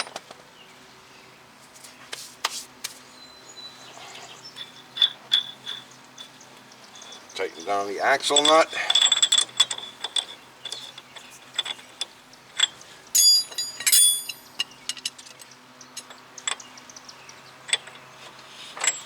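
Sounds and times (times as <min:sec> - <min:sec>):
ringing metallic clinks: 0:13.2 - 0:14.7.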